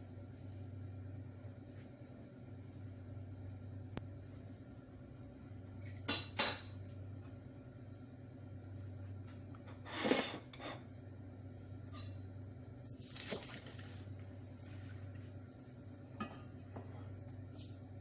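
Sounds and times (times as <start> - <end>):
steady low hum: 0.0 - 18.0
pots and utensils clattering: 9.7 - 10.9.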